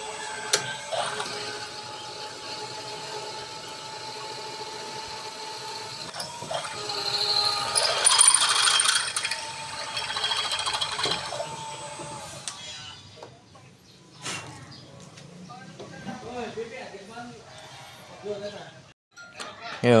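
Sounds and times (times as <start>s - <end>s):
drill bit boring metal: 1.3s - 6.1s, 6.8s - 7.4s
milling machine motor whine: 1.3s - 6.1s, 6.8s - 7.4s.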